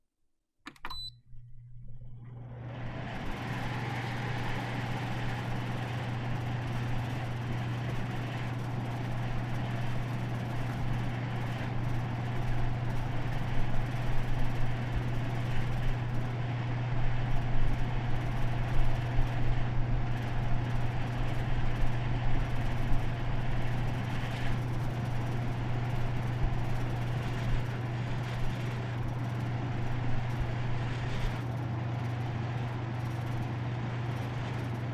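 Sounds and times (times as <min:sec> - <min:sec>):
air conditioner fan running: 0:00.7 - 0:34.9.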